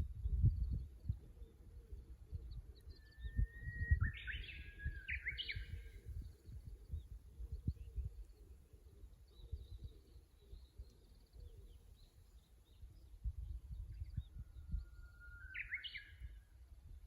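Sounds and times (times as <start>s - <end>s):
faint bird chirps: 0.0s - 16.6s
wind rumble on microphone: 0.0s - 17.0s
bird singing whistled song: 2.4s - 8.2s, 9.2s - 16.5s.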